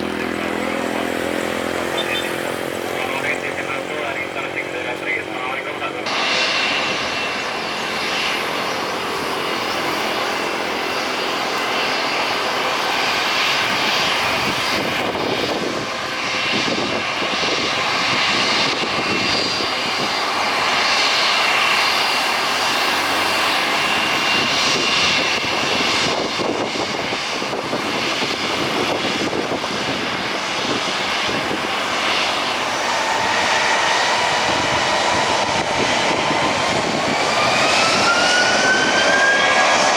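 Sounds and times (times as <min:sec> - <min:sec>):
jet engines whining: 0:00.0 - 0:39.9.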